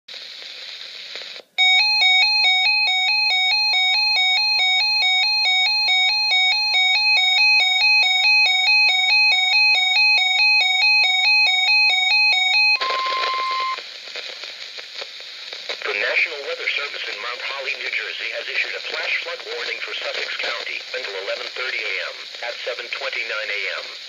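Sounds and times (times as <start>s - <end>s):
two-pitch electronic alarm: 1.6s - 13.8s
steady attention tone: 12.8s - 13.8s
radio static: 12.8s - 24.0s.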